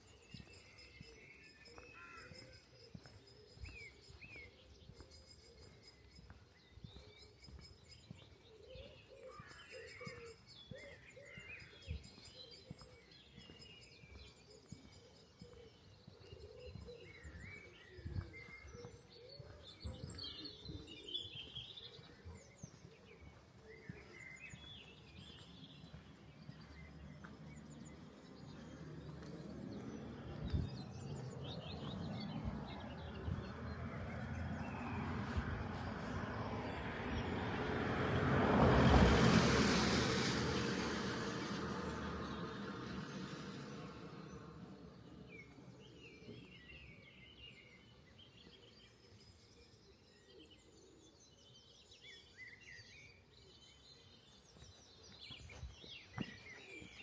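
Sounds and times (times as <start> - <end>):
small birds chirping: 0.0 - 37.8, 39.9 - 57.0
soft footsteps: 11.9 - 37.4, 54.6 - 57.0
vehicle approaching: 23.2 - 46.9.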